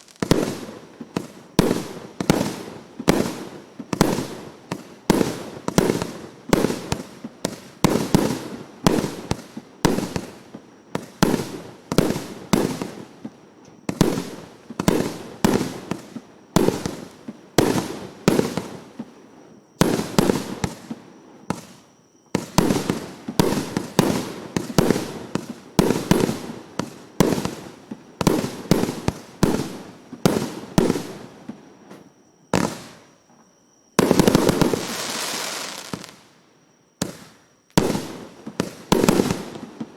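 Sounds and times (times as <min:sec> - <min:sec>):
firework battery shots: 0:34.0 - 0:36.4, 0:37.0 - 0:39.6.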